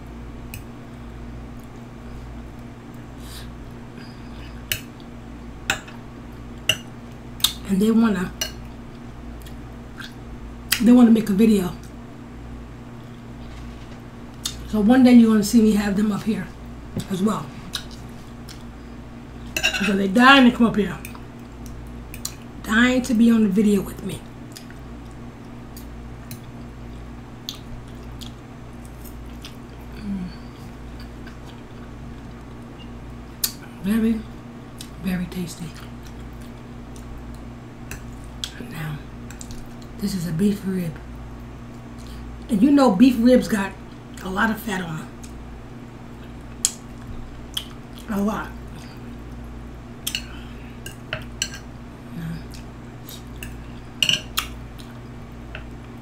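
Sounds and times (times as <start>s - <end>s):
wet chewing sounds: 24.5s - 29.9s, 46.1s - 48.1s.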